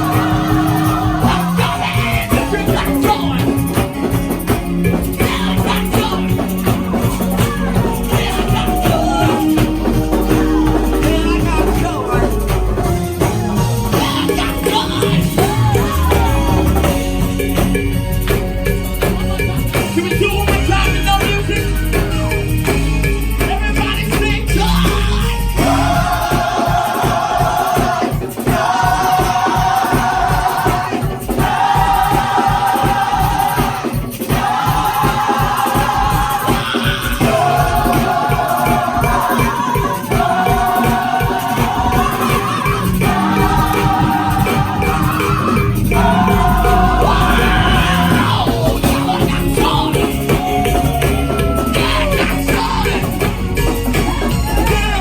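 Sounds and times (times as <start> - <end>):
bass guitar: 0.0 - 26.6, 40.1 - 55.0
drums beating: 0.0 - 55.0
gospel choir singing: 0.0 - 55.0
instrumental accompaniment: 0.0 - 55.0.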